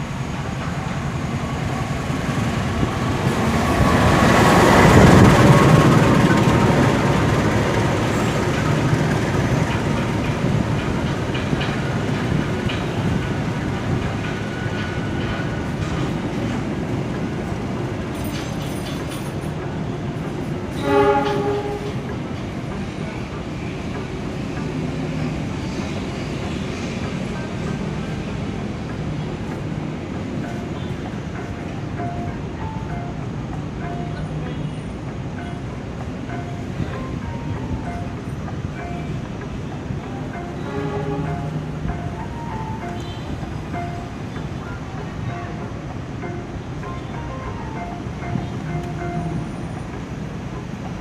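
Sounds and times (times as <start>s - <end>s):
train wheels clattering on rails: 0.0s - 51.0s
train horn blast: 20.7s - 22.1s, 40.5s - 41.8s.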